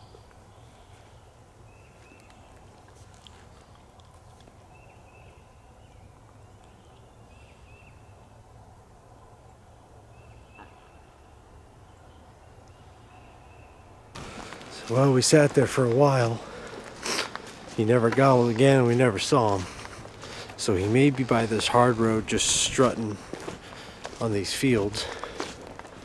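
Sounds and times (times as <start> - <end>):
wind buffeting microphone: 14.1 - 25.9.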